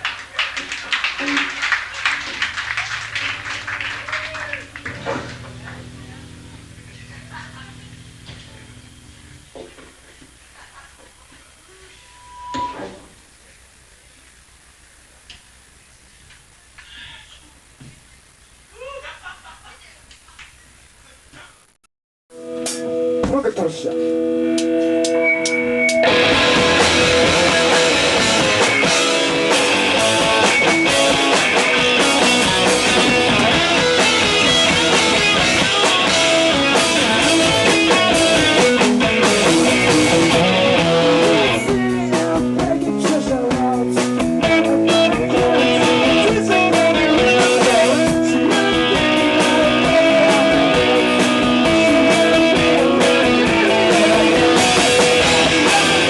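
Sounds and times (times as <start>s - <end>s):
loud rock band music: 2.4s - 8.9s, 22.4s - 56.0s.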